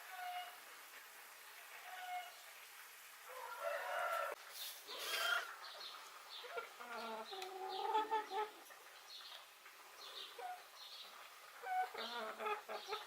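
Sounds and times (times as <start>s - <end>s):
chicken calling: 1.8s - 2.4s, 11.6s - 13.0s.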